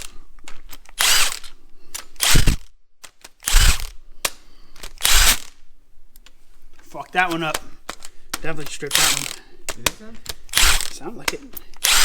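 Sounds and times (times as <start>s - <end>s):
cordless power tool bursts: 1.0s - 2.7s, 3.4s - 4.0s, 4.9s - 5.5s, 8.9s - 9.4s, 10.5s - 11.0s, 11.8s - 12.0s.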